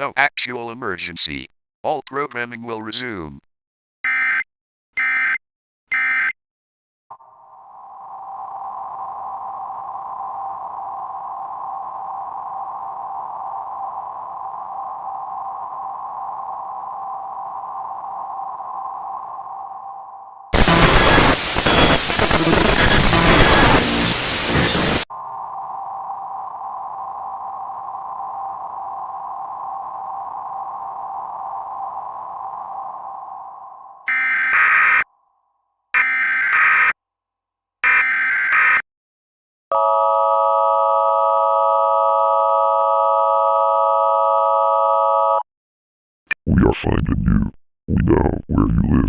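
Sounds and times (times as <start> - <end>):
harsh static burst: 20.6 - 25.1.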